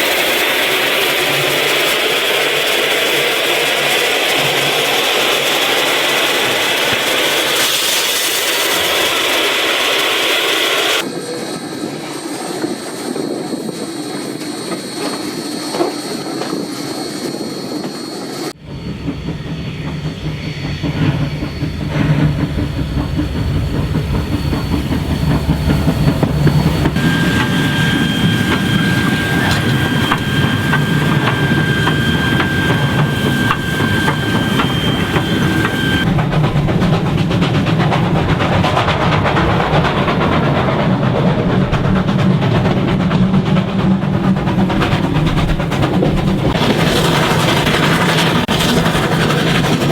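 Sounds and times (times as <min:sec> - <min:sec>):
steam train running: 0:00.0 - 0:49.9
steady high tone: 0:18.5 - 0:36.4
wheels clicking over rail joints: 0:22.9 - 0:49.9.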